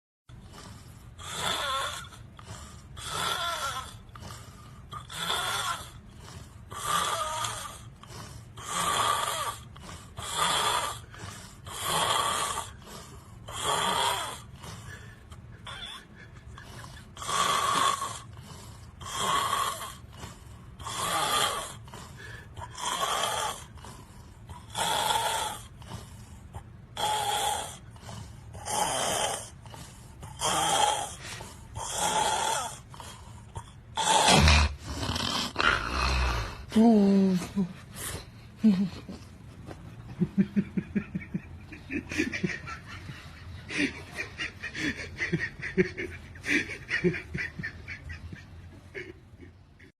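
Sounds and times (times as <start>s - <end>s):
person snoring loudly: 0.4s - 26.3s, 26.9s - 37.7s.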